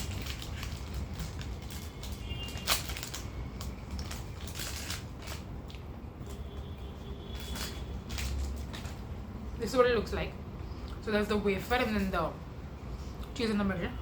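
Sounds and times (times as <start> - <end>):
plastic wrapper crinkling: 0.0 - 6.6, 7.3 - 9.2.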